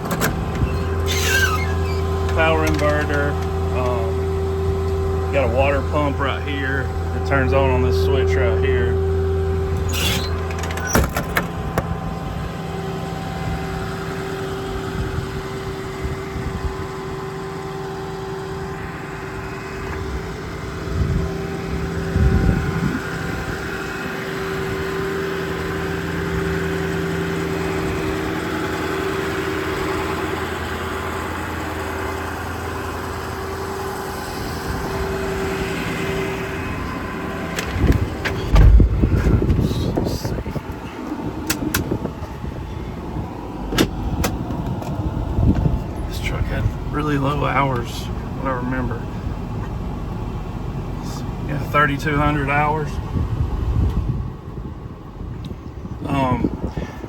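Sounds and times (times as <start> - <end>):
diesel engine idling: 0.0 - 57.0.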